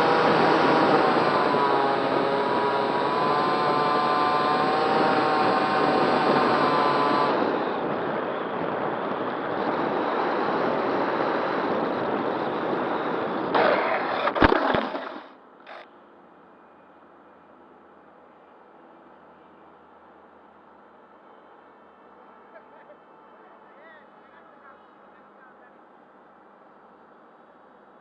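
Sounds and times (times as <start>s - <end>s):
motor and propeller whine: 0.0s - 16.2s.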